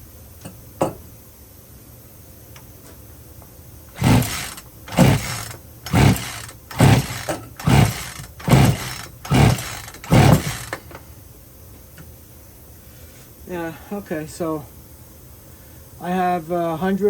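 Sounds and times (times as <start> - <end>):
chainsaw recoil starter pulled: 4.0 - 10.9
engine cranking without firing: 4.0 - 10.9.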